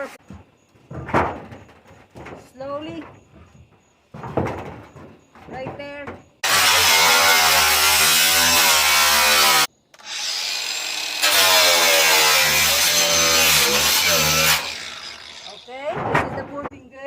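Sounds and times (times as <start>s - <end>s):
power tool cutting sheet metal: 6.4s - 15.7s.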